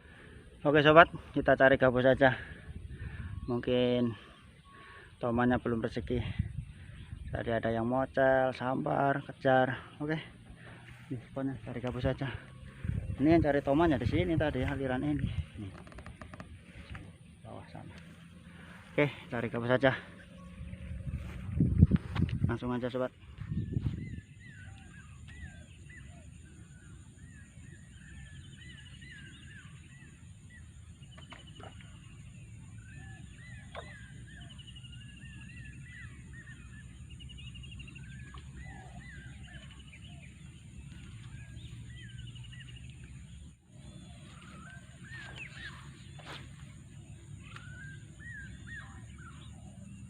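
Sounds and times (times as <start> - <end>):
birds chirping and trilling: 0.0 - 50.0
steady low rumble: 10.3 - 26.9.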